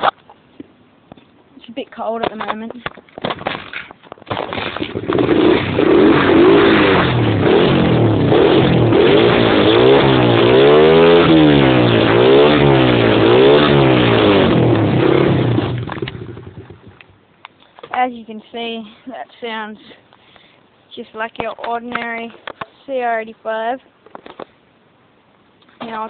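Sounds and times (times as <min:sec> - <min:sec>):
motorcycle engine revving: 0:04.3 - 0:17.2.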